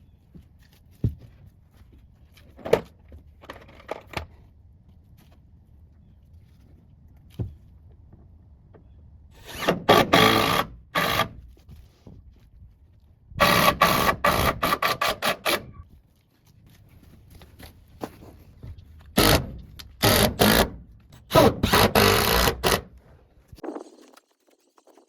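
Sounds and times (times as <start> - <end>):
loud carpentry bursts: 9.4 - 11.4, 13.4 - 15.8, 19.2 - 22.9.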